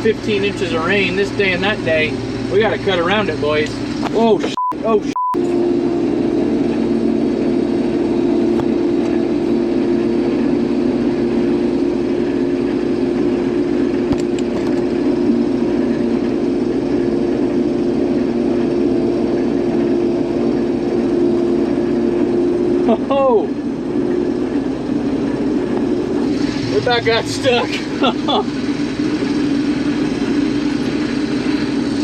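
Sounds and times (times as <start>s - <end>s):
combine harvester droning: 0.0s - 32.0s.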